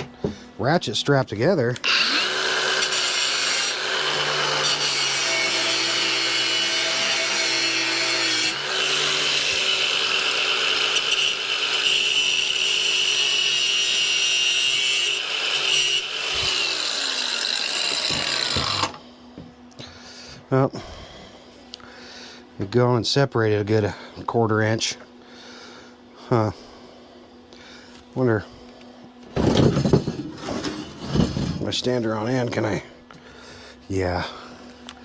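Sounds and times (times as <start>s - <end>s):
angle grinder cutting metal: 1.8s - 19.0s.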